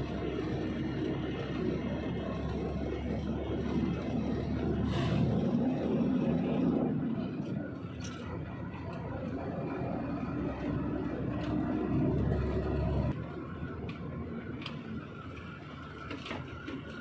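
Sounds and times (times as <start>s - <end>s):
truck engine rumbling: 0.0s - 17.0s.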